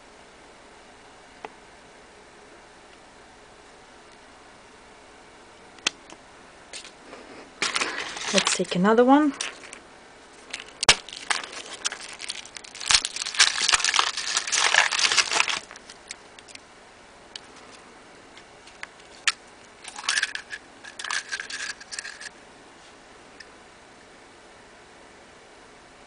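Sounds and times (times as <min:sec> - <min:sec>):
foil wrapper crinkling: 0:07.6 - 0:09.8, 0:10.4 - 0:16.6, 0:18.6 - 0:22.3.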